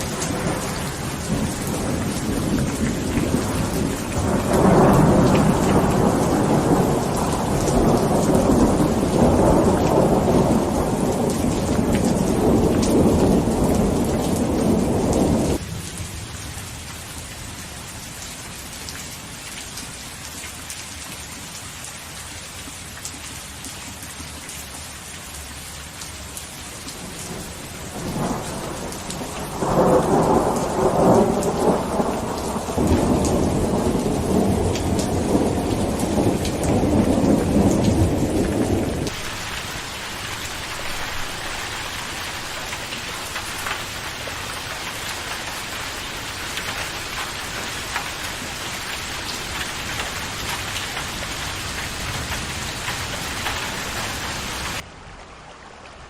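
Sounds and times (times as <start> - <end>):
rolling thunder: 0.0 - 15.6, 27.0 - 44.0
steady rain: 0.0 - 56.0.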